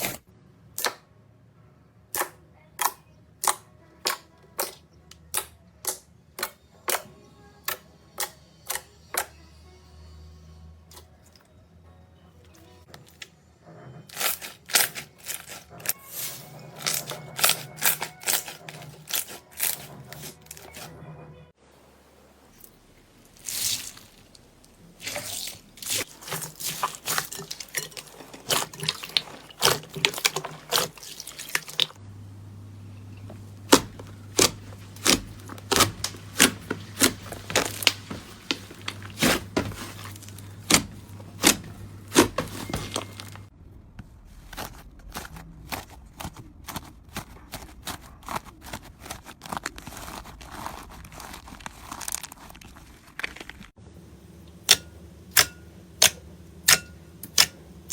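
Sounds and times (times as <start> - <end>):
low hum: 32.0 - 44.3
slime crackling and popping: 44.6 - 53.7.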